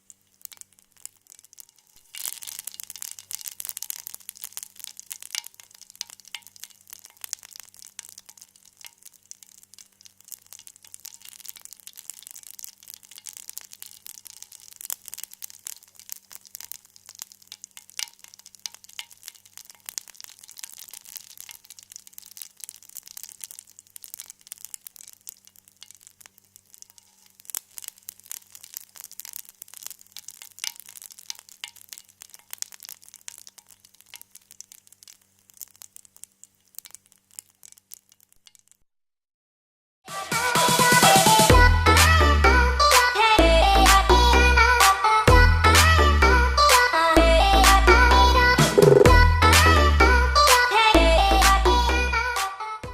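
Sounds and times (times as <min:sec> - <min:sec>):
food sizzling in oil: 0:00.0 - 0:38.9, 0:40.1 - 0:52.0.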